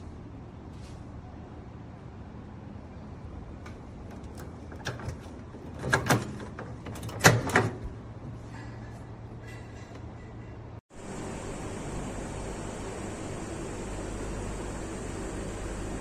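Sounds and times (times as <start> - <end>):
steady low hum: 0.0 - 16.0
microwave door clunking: 4.0 - 8.0.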